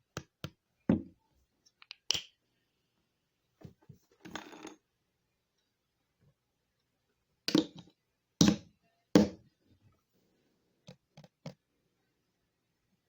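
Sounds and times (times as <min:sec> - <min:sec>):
objects knocking and clicking: 0:04.2 - 0:04.8.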